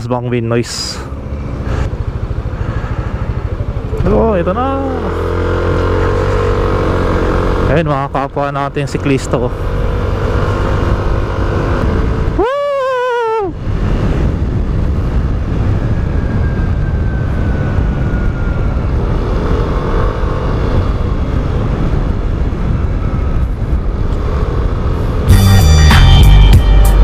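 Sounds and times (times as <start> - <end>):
road noise: 0.0 - 27.0
motorcycle engine: 0.7 - 12.5, 13.6 - 27.0
wind rushing over microphone: 8.7 - 25.3
music: 25.3 - 27.0.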